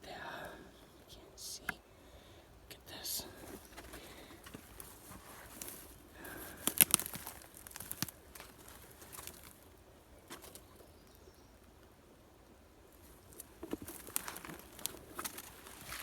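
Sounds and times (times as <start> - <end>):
twigs crackling underfoot: 2.9 - 10.8, 12.9 - 16.0.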